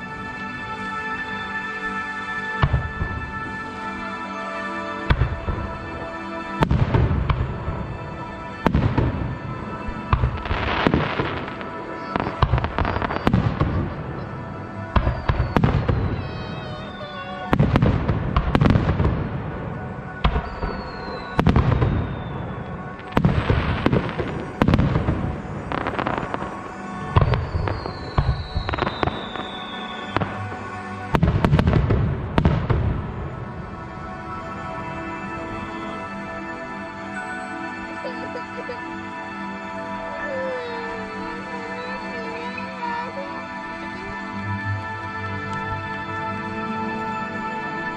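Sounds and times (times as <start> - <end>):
fireworks crackle: 5.1 - 38.8
fireworks bursting: 6.6 - 36.3.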